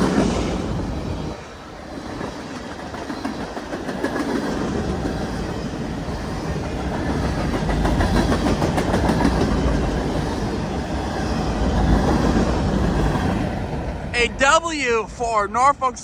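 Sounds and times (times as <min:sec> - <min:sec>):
freight train cars rolling past: 0:00.0 - 0:16.0
wheels clacking over rail joints: 0:02.0 - 0:14.0.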